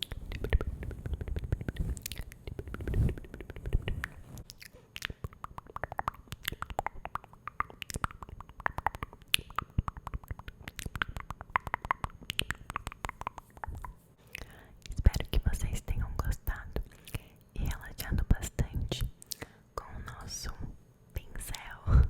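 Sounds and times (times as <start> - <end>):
wet lip and tongue clicks: 0.0 - 15.4, 19.2 - 19.5.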